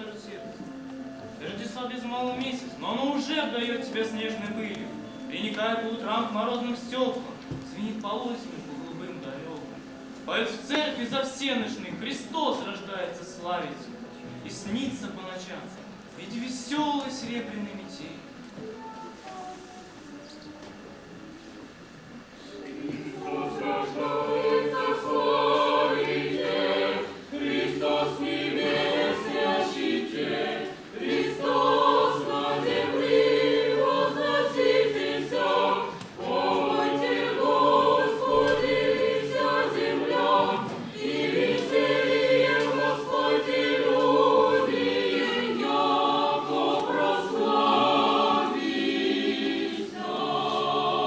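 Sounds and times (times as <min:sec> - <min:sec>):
choir singing: 0:00.0 - 0:18.2, 0:22.1 - 0:51.0.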